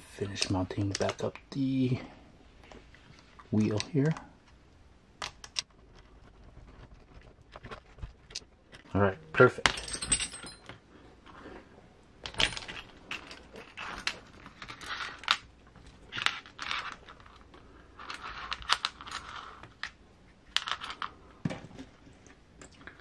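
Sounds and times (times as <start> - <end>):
small metal tools clinking: 9.5 - 10.8.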